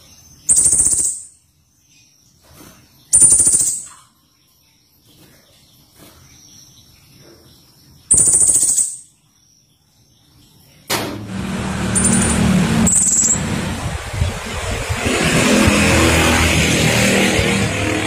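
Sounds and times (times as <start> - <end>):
bird chattering trills: 0.4 - 1.3, 3.1 - 3.9, 8.1 - 9.1, 11.9 - 16.0
steady rushing noise with low hum: 11.1 - 18.0.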